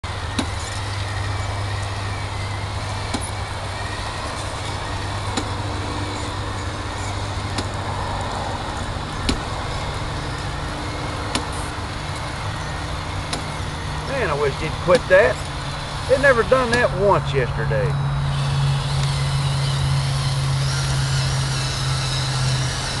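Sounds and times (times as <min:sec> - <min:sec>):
grinding dirt: 0:00.0 - 0:23.0
toy bulldozer motor hum: 0:00.0 - 0:23.0.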